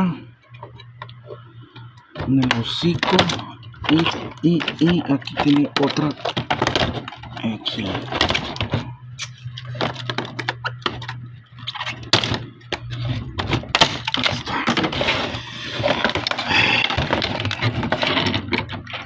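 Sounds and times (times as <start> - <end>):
steady low hum: 0.0 - 19.0
plastic toy and packaging handled: 2.4 - 12.4.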